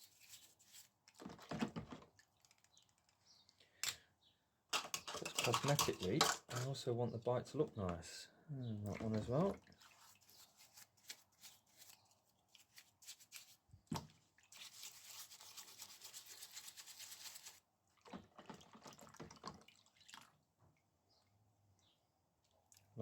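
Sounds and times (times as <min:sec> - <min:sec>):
brush scrubbing bicycle parts: 0:00.0 - 0:01.0, 0:09.8 - 0:13.7, 0:14.5 - 0:17.6.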